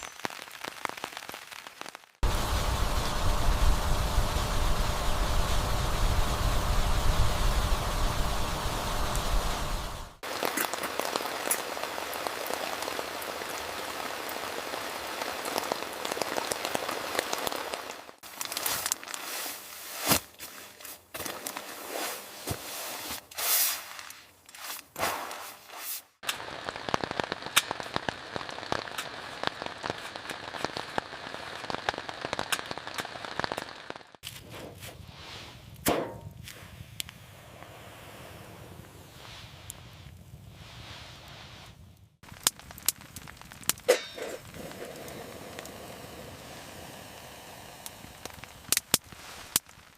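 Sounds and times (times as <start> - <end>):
rain falling: 0.0 - 19.7, 26.2 - 34.2, 42.2 - 49.9.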